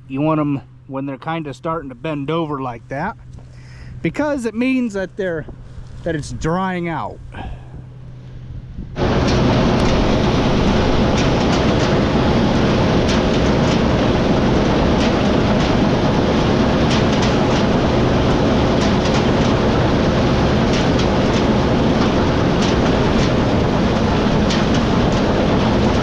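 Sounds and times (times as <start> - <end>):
heavy farm machinery running: 9.0 - 26.0
sharp rattling clicks: 9.2 - 26.0.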